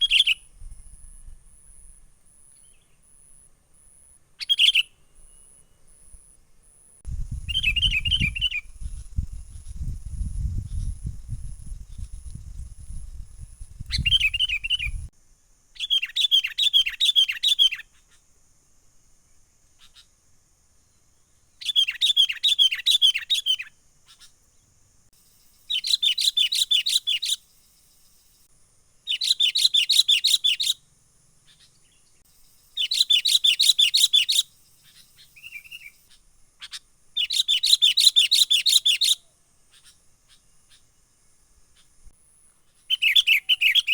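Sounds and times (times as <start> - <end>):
bird chattering calls: 32.8 - 40.8.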